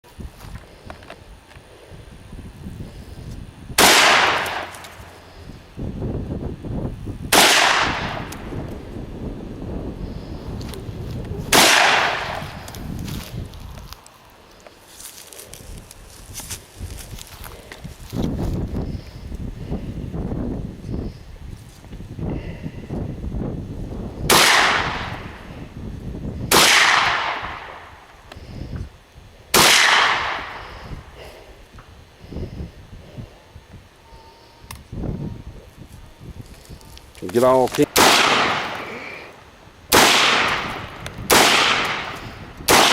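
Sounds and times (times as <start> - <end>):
rifle shots: 3.8 - 4.8, 7.3 - 8.3, 11.5 - 12.6, 24.3 - 25.3, 26.5 - 27.9, 29.6 - 30.6, 37.8 - 38.9, 39.9 - 42.9.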